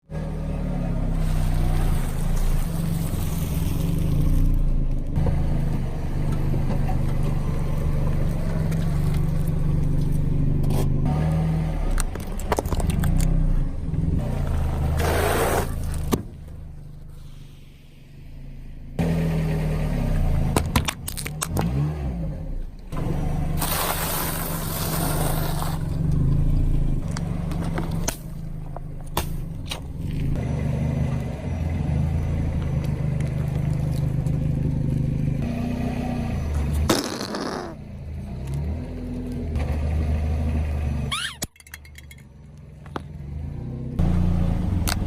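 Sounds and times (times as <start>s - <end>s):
car engine running: 0.0s - 45.0s
cracks and pops under tyres: 6.3s - 11.0s, 11.9s - 13.4s, 20.5s - 21.8s, 23.6s - 30.4s, 32.5s - 35.2s, 36.5s - 39.8s, 41.2s - 43.2s.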